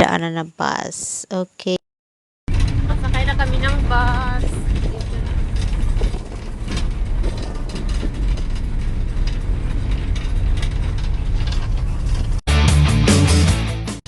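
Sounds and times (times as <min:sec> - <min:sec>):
bus engine rumble: 0:02.5 - 0:12.4
loose fittings rattling: 0:02.5 - 0:12.4.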